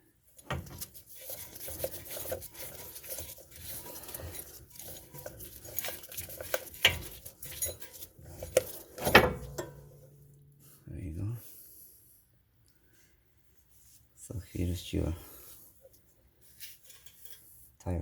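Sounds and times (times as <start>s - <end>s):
metal tools clinking and scraping: 0.4s - 10.1s, 16.5s - 17.6s.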